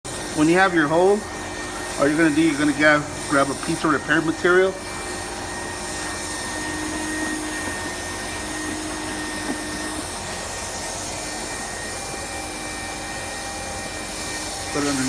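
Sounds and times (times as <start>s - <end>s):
motor-driven machine whirring: 0.1s - 15.0s.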